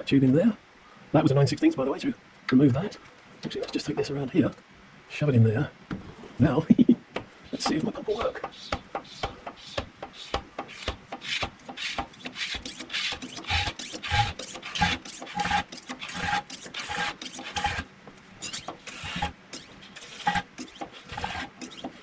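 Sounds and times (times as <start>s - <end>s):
hand pump squeaky plunger strokes: 7.6s - 17.8s, 18.4s - 22.0s.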